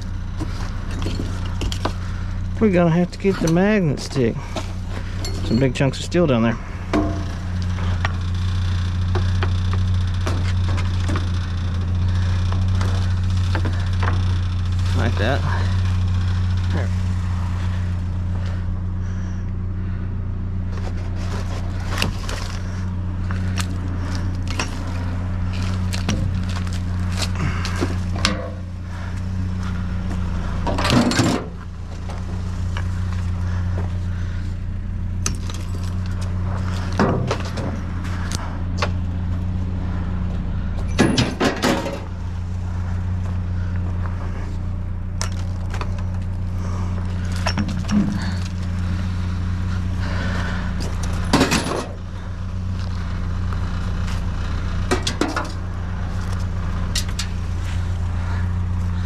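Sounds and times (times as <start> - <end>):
low engine hum: 0.0 - 59.0
scrap metal clanking: 6.6 - 8.3, 20.8 - 28.9.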